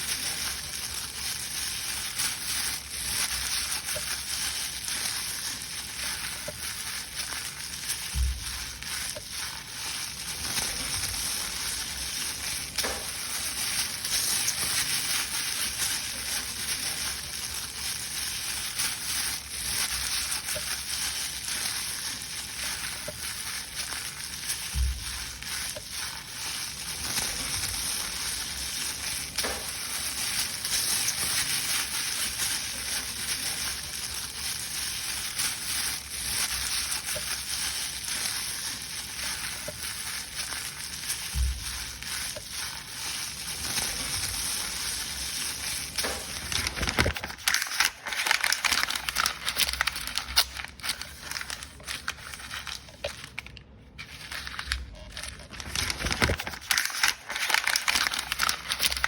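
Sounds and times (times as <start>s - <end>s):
paper crumpling: 0.0s - 59.0s.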